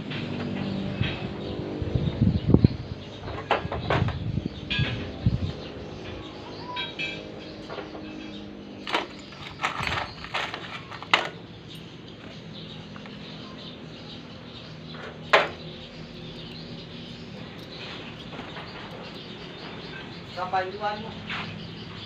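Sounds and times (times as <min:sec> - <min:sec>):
tools knocking and clinking: 0:08.8 - 0:13.2, 0:15.2 - 0:15.6.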